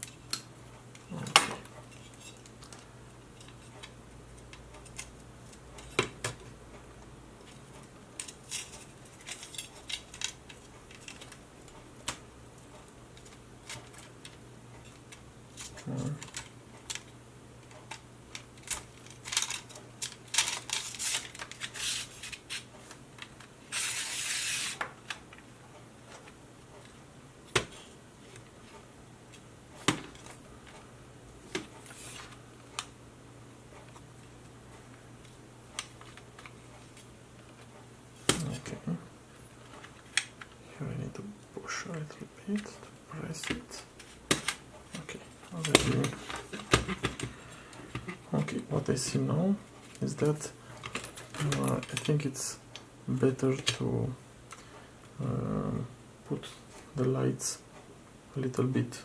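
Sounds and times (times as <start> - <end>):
faint steady hum: 0.0 - 59.0
plastic and metal parts clicking: 13.2 - 22.0
scraping hiss: 23.7 - 24.8.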